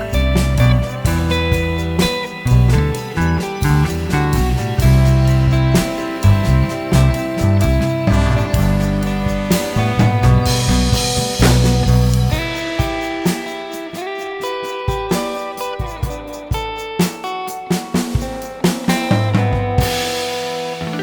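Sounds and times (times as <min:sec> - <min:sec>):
drum kit steady beat: 0:00.0 - 0:21.0
plucked guitar: 0:00.0 - 0:21.0.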